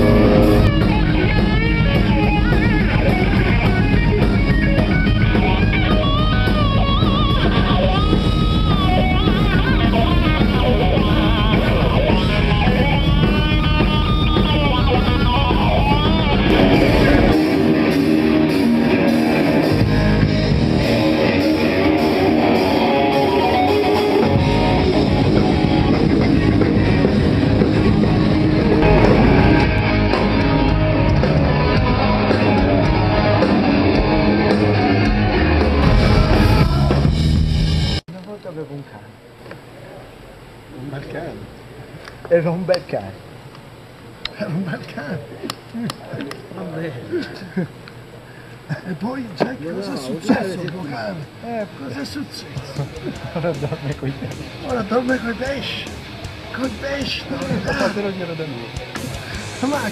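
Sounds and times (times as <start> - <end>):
bass and kick drum: 0.0 - 17.9, 24.3 - 38.0
rock band playing live: 0.0 - 38.1, 52.5 - 59.9
distorted electric guitar: 0.0 - 38.4, 51.3 - 59.9.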